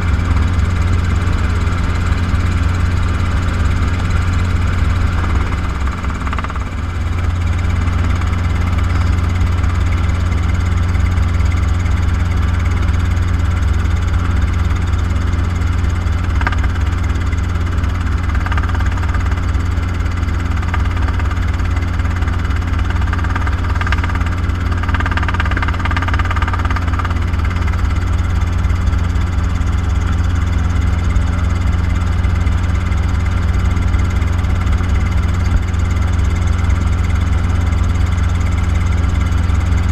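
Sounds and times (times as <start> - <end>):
helicopter engine and rotor drone: 0.0 - 39.9.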